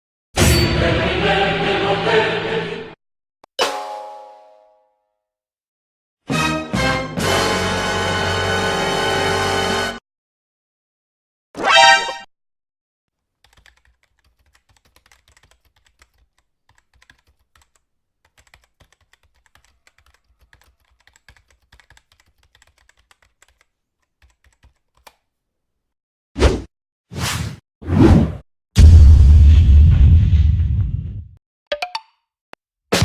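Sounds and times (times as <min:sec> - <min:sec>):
keyboard typing: 0:13.4 - 0:25.3.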